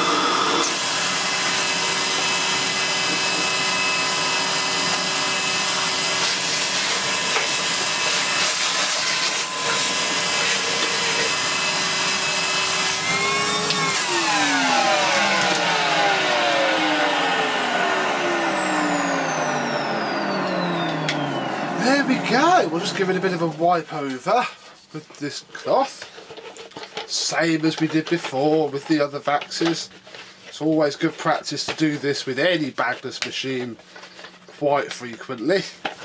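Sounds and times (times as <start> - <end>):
vacuum cleaner motor whining: 0.0 - 24.2.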